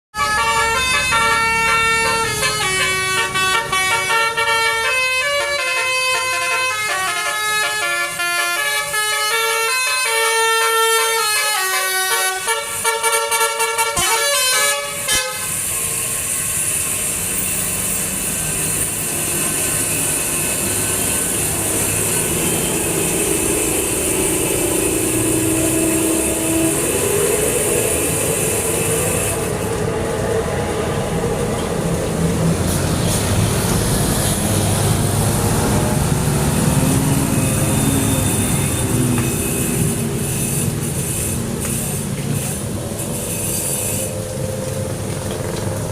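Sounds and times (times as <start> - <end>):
bus horn chiming melody: 0.1 - 15.7
rushing noise with low drone: 15.3 - 45.9.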